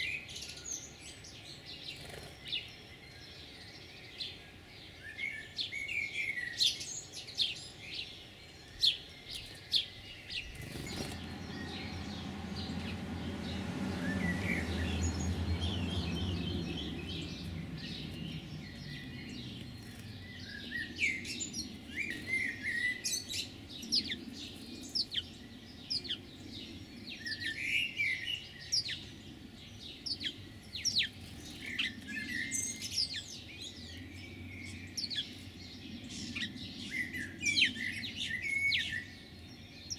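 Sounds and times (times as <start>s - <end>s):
songbirds chirping: 0.0s - 39.9s
low rumble: 10.4s - 20.8s.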